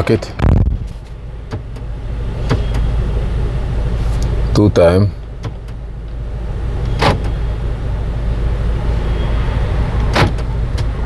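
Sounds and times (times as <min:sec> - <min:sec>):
low hum: 0:00.0 - 0:04.5
power door locks clunking: 0:01.4 - 0:03.0, 0:05.2 - 0:06.2, 0:06.8 - 0:07.5, 0:09.9 - 0:11.0.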